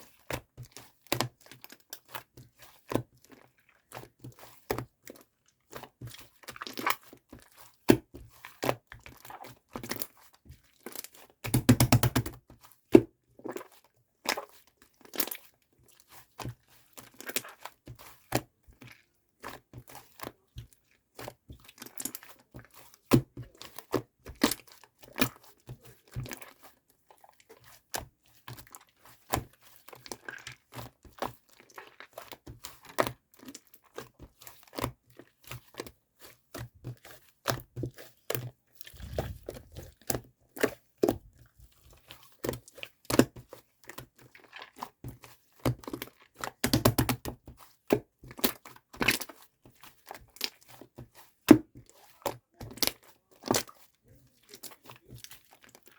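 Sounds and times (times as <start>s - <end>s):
slime squished by hand: 37.8s - 43.3s.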